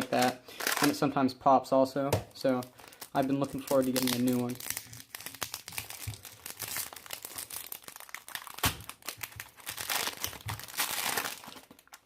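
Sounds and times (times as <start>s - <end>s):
plastic wrap crinkling: 0.0s - 1.0s, 2.4s - 12.0s.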